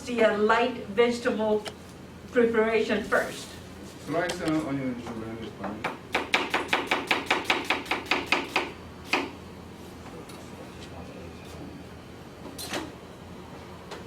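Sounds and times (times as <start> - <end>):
knife chopping onion on board: 5.8 - 9.3.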